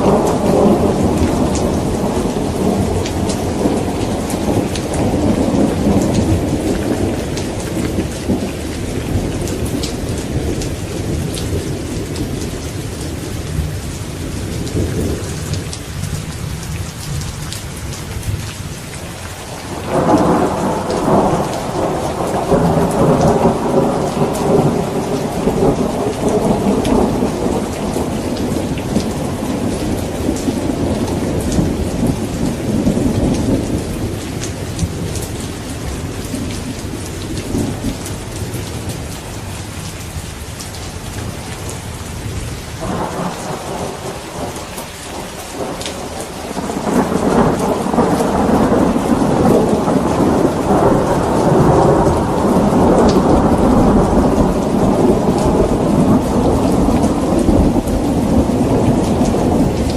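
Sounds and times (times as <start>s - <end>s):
rolling thunder: 0.0s - 16.2s, 19.6s - 39.6s, 42.2s - 59.9s
steady rain: 0.0s - 59.9s
loud thunderclap: 19.7s - 34.2s, 42.8s - 59.9s.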